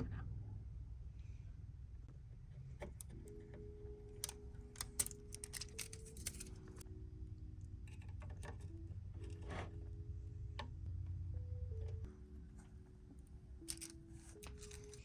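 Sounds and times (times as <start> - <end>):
soft background music: 2.0 - 15.0.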